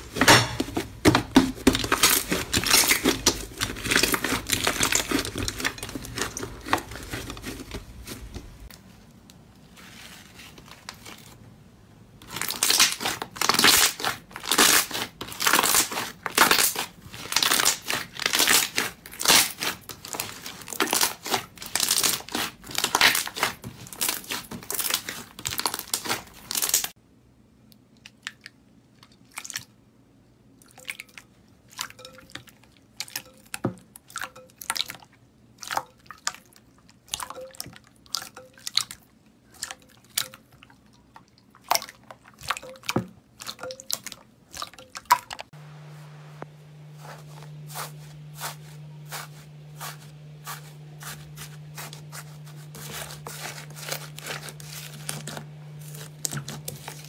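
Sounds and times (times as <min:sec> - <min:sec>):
slime crackling and popping: 0:12.3 - 0:26.9.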